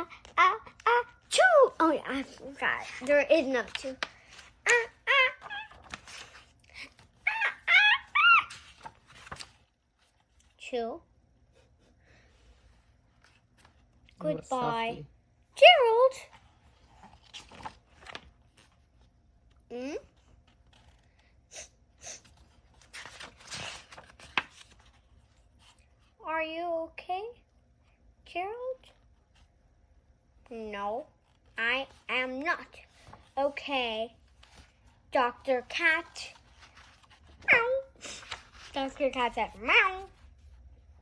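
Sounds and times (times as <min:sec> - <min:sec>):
paper page rustling: 0:02.9 - 0:07.1, 0:08.4 - 0:10.2, 0:16.8 - 0:18.7, 0:22.2 - 0:25.0, 0:36.4 - 0:38.7.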